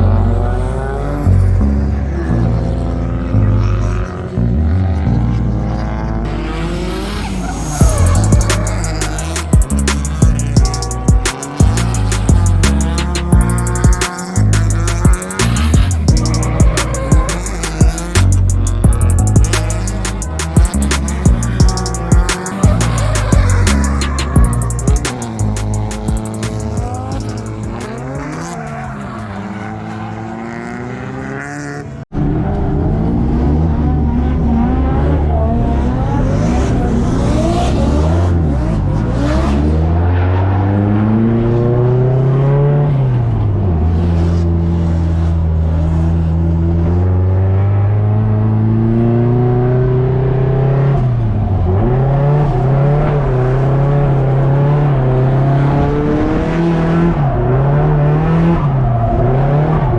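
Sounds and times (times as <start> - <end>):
car engine revving: 0.0 - 59.9
tyres squealing: 6.5 - 29.6.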